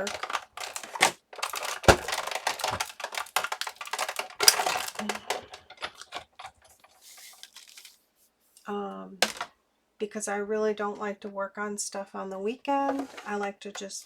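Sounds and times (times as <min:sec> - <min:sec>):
paper pieces clicking and crackling: 0:00.0 - 0:08.0.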